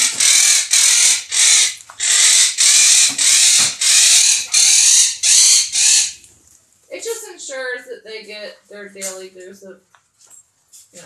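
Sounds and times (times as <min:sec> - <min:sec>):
parrot squawking: 0:00.0 - 0:06.3.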